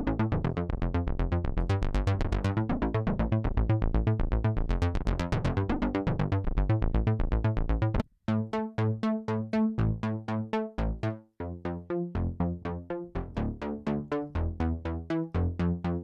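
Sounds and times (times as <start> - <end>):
synthesizer plucked notes: 4.7 - 16.0.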